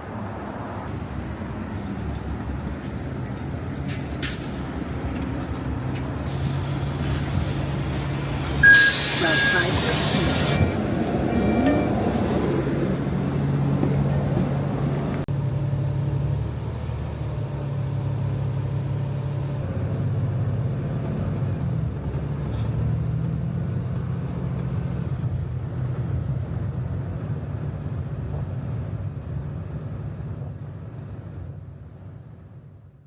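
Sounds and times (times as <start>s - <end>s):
vehicle rumbling in motion: 0.0s - 33.0s.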